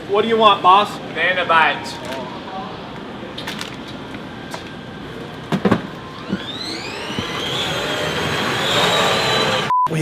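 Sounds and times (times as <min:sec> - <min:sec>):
toy car electric motor whining: 0:06.0 - 0:09.7.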